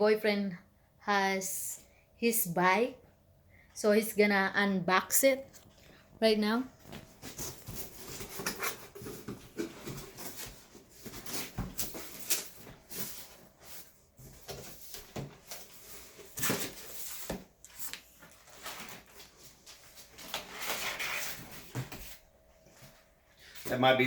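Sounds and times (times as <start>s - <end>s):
cardboard and packing rustling: 5.4s - 23.8s.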